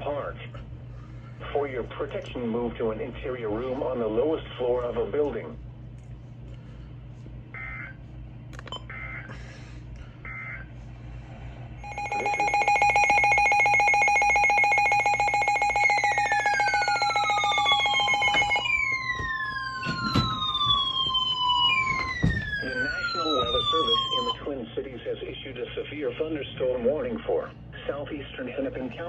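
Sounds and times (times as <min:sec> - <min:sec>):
falling siren-like sweeps: 0:11.8 - 0:24.4.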